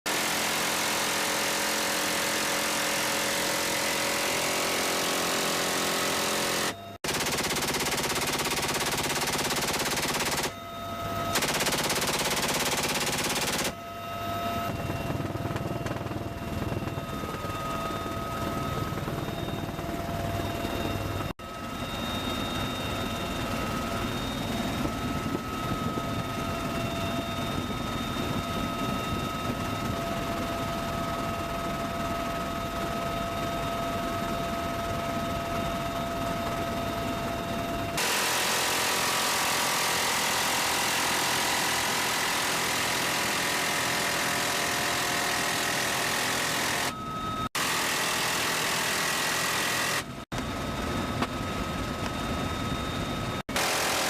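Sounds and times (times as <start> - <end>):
steady high whine: 0.1 - 54.0
minigun firing bursts: 3.4 - 10.6, 11.4 - 13.8.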